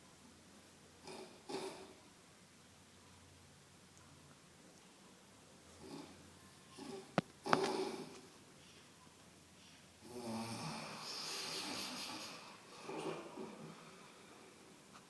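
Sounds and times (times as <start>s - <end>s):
loud snort: 1.0s - 2.0s, 6.8s - 8.2s, 10.0s - 14.0s
man snoring: 10.0s - 14.0s.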